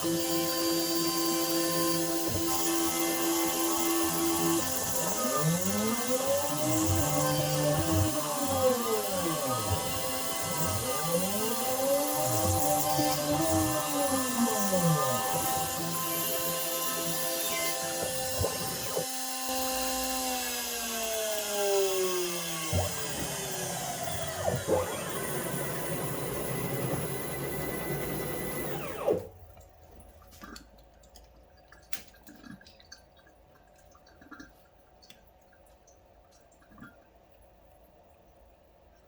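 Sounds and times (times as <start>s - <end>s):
power tool motor whining: 0.0s - 29.3s.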